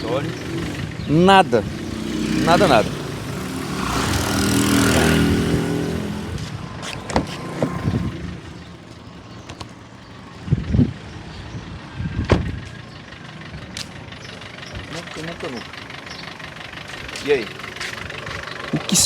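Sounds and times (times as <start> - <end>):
car engine idling: 0.0 - 19.0
sharp engine knocks: 12.2 - 18.7.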